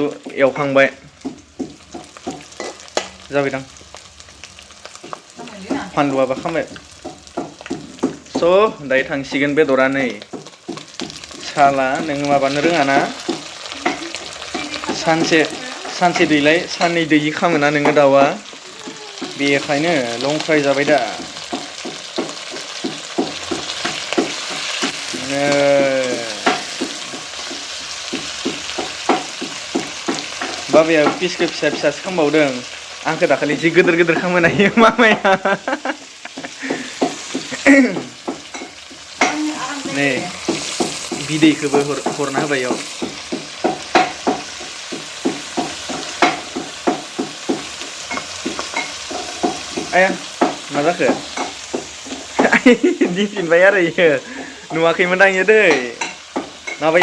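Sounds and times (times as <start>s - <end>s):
food sizzling in hot oil: 0.0s - 57.0s
person humming: 13.6s - 15.9s, 18.6s - 19.5s, 25.1s - 26.5s.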